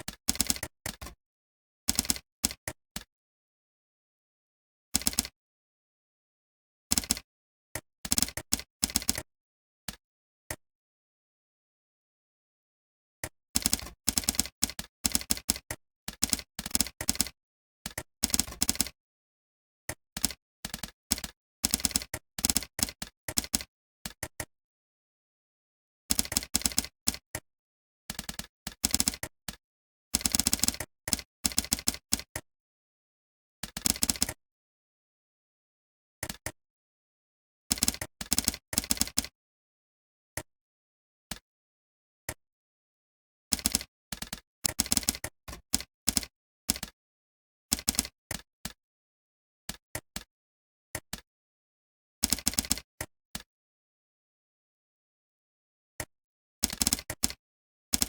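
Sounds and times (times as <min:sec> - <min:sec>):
computer keyboard typing: 0:20.2 - 0:24.4, 0:26.1 - 0:27.4, 0:30.2 - 0:32.3, 0:37.7 - 0:39.3, 0:43.5 - 0:46.9, 0:47.8 - 0:48.1, 0:52.2 - 0:52.8, 0:56.6 - 0:57.4.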